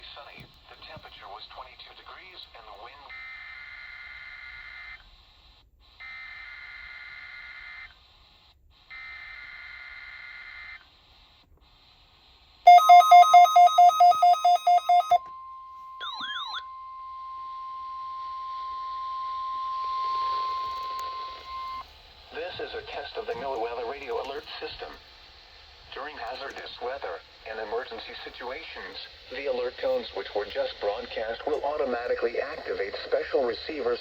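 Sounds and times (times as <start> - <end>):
steady alert tone: 12.7 - 15.2
warbling data tones: 12.7 - 15.2, 16.0 - 21.8
rapid loud beeping: 12.7 - 15.3, 16.0 - 17.9.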